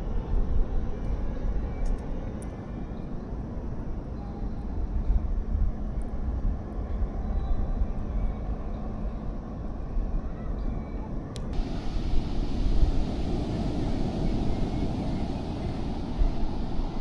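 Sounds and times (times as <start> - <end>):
wind buffeting microphone: 11.4 - 17.0.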